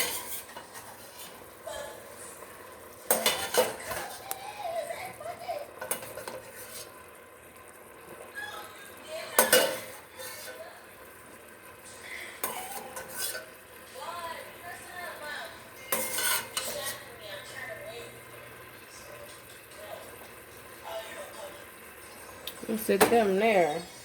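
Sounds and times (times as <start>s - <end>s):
spoon scraping frying pan: 0.0s - 2.4s, 3.0s - 4.6s, 5.8s - 7.2s, 9.2s - 10.9s, 11.9s - 13.9s, 15.3s - 18.2s
butter sizzling: 0.0s - 24.0s.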